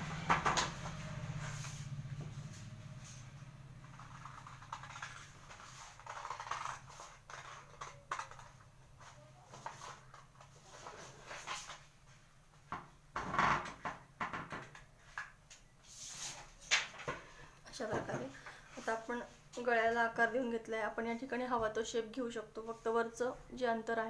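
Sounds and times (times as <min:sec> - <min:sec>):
paper rustling: 0:03.8 - 0:11.9.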